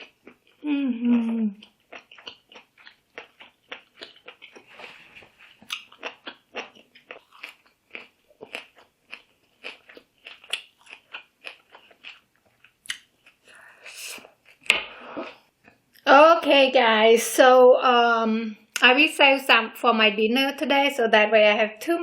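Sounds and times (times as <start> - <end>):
wet chewing with mouth smacks: 0.0 - 16.0.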